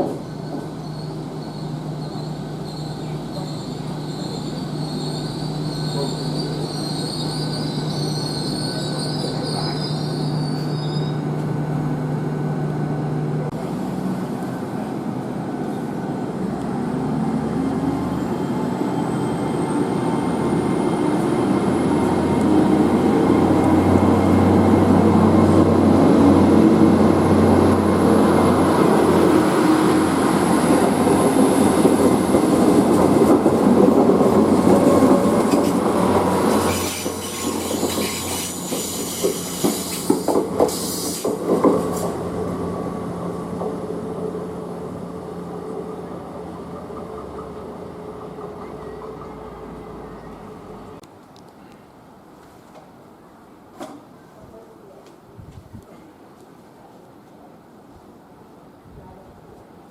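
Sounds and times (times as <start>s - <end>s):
rail noise: 0.0s - 59.9s
train wheels squealing: 0.2s - 11.3s, 18.1s - 21.0s, 36.4s - 41.3s.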